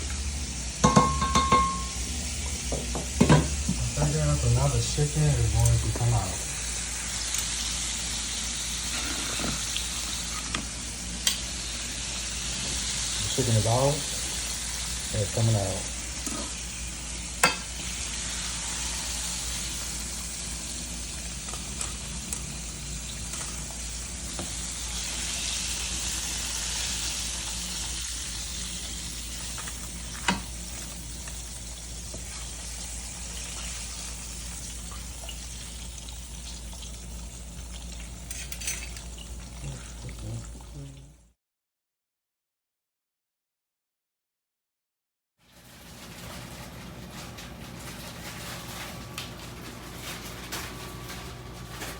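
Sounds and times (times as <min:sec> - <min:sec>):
chicken sizzling in oil: 0:00.0 - 0:41.0.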